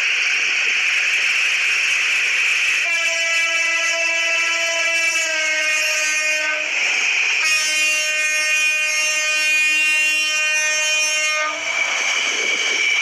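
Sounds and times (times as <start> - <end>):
toy train electronic horn: 2.8 - 6.7, 7.4 - 11.6.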